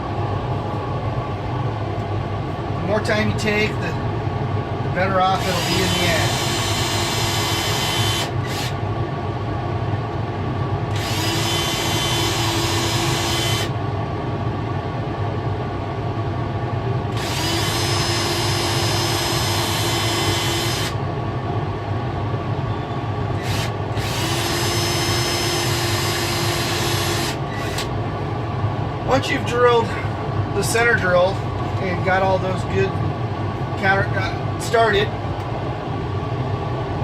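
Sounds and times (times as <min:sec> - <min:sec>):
steady low hum: 0:00.0 - 0:37.0
cordless drill drilling metal: 0:05.4 - 0:08.8, 0:10.9 - 0:13.7, 0:17.1 - 0:21.0, 0:23.4 - 0:27.9.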